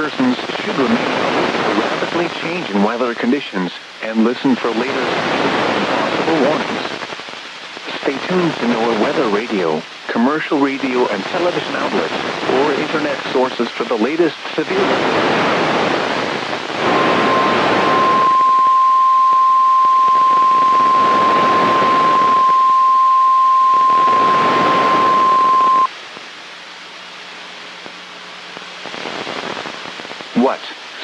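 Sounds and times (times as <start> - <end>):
faint hum: 0.0 - 31.0
radio hiss: 0.0 - 31.0
high alert tone: 16.9 - 25.9.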